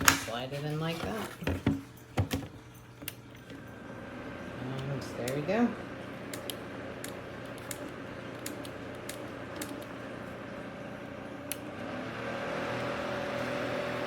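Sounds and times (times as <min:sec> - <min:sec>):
small fan whirring: 0:00.0 - 0:14.0
plastic clicks from handling: 0:06.3 - 0:09.9.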